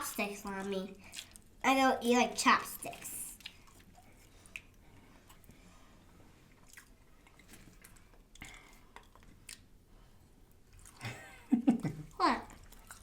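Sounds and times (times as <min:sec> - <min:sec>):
chewing and biting: 0:06.5 - 0:09.7, 0:12.5 - 0:13.0.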